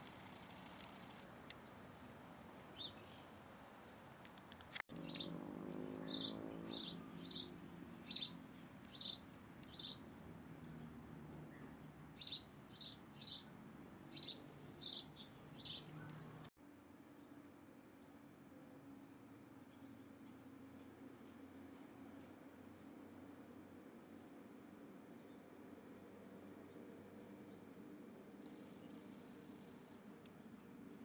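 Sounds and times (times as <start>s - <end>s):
small bird chirping: 0.1s - 3.9s, 4.9s - 10.0s, 11.5s - 16.5s.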